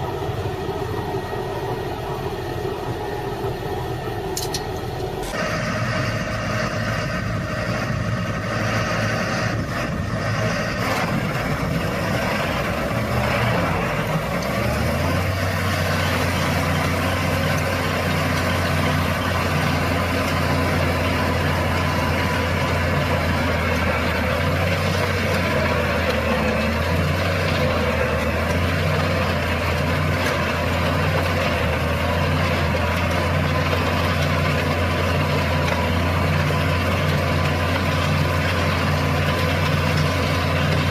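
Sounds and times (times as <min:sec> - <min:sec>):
deep low drone: 0:00.0 - 0:28.5
heavy diesel engine running: 0:00.0 - 0:40.9.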